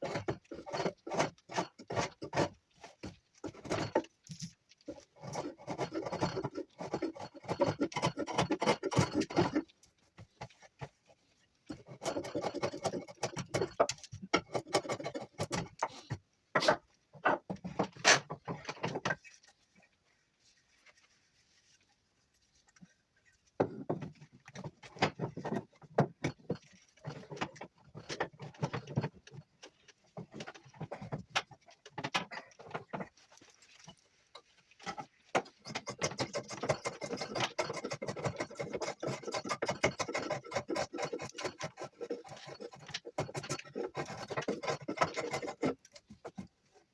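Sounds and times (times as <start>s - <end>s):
blade carving wood: 5.2s - 9.7s, 35.4s - 46.5s.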